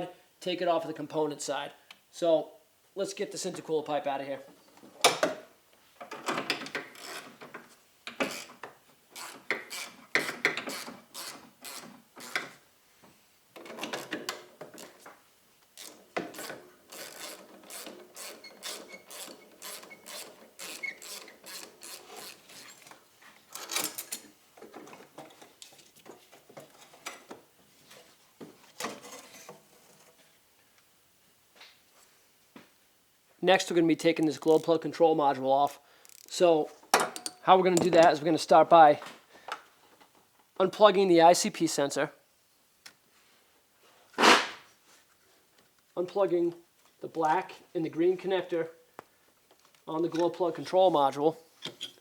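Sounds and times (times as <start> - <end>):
ratchet clicks: 36.0 - 36.4.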